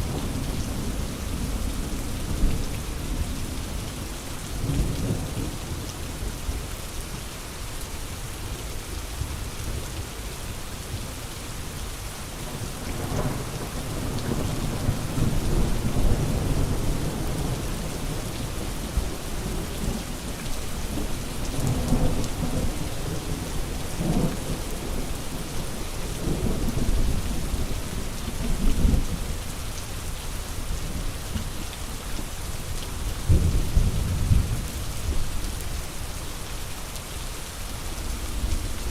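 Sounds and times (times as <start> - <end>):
rain hissing: 12.2 - 38.9.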